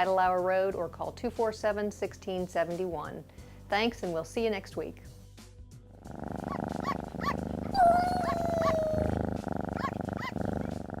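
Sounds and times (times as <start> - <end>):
animal purring rumble: 5.8 - 11.0.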